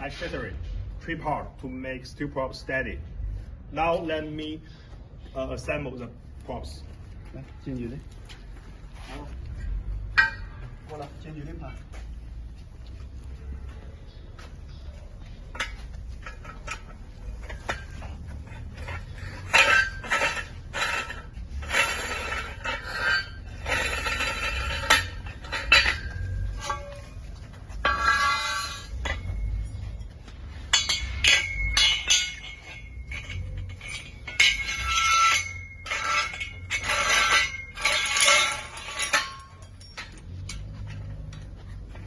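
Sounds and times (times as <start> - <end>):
steel tubes clanking: 8.0 - 11.9, 14.1 - 42.0
sustained metallic ring: 15.5 - 41.4
metal tube scraping on tube: 16.3 - 27.2, 27.8 - 29.5, 30.7 - 39.4.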